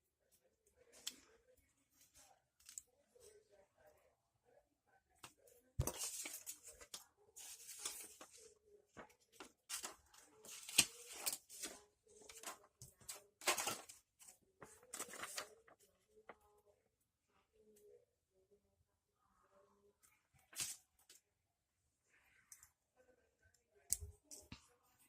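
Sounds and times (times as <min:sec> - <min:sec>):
crinkly packaging rustling: 0:05.8 - 0:15.8.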